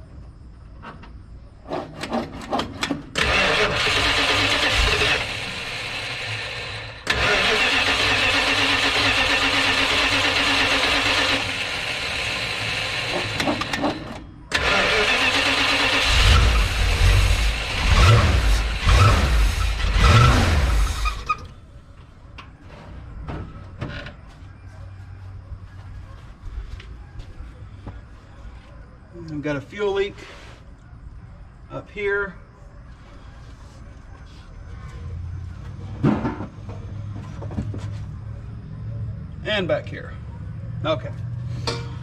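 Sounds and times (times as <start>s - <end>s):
engine cranking on starter: 3.0s - 21.5s
engine firing unevenly: 3.2s - 21.7s.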